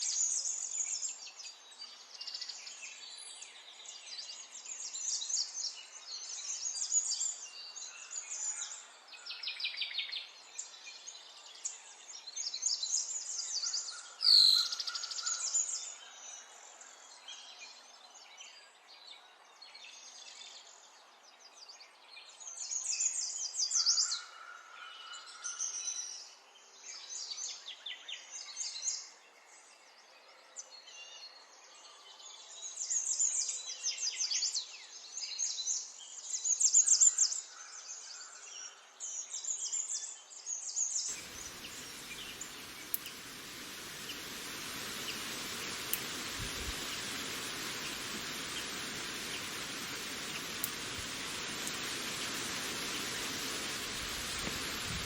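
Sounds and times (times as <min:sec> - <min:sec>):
low whistled bird notes: 0:41.1 - 0:55.0
songbirds trilling: 0:41.1 - 0:55.0.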